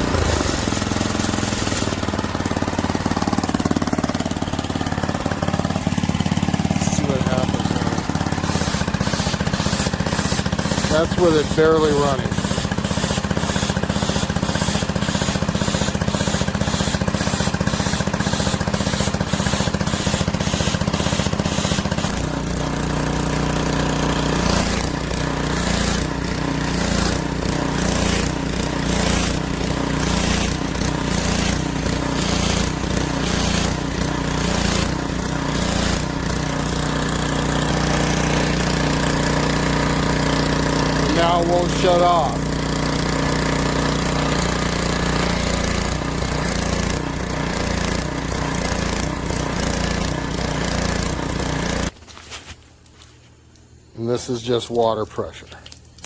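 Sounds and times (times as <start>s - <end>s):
petrol engine running: 0.0s - 51.9s
water spraying from gun: 0.0s - 52.0s.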